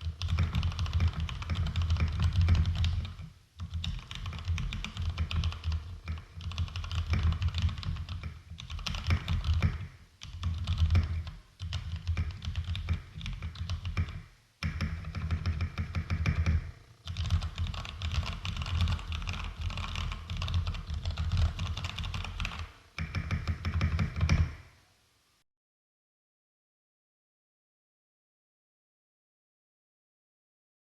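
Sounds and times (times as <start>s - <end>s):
mechanical keyboard typing: 0.0s - 24.6s.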